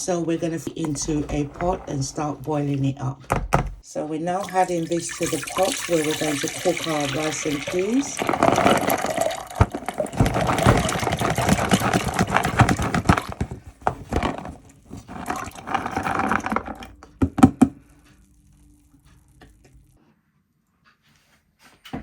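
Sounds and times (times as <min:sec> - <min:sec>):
beans and water pouring into pot: 0:04.3 - 0:12.6, 0:15.0 - 0:16.9.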